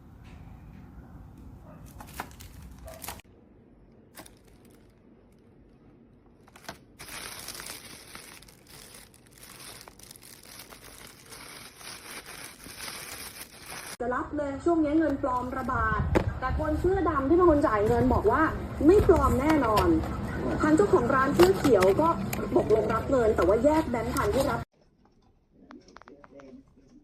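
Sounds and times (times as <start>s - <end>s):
dense crinkling crackling noise: 4.0s - 14.0s, 24.0s - 27.0s.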